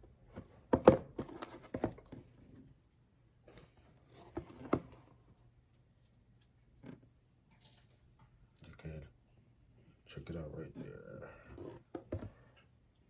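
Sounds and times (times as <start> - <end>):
box handling knocks and rustles: 0.3 - 2.2, 4.1 - 5.1.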